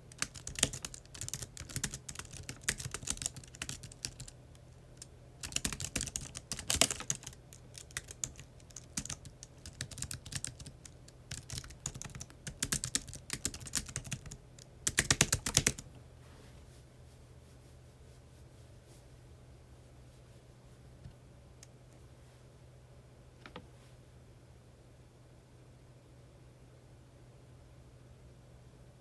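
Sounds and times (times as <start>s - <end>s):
typing on computer keyboard: 0.1s - 15.8s.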